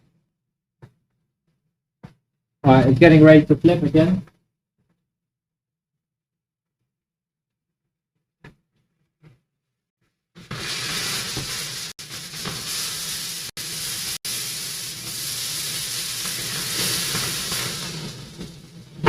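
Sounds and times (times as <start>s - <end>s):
meat sizzling in hot oil: 10.4s - 19.0s.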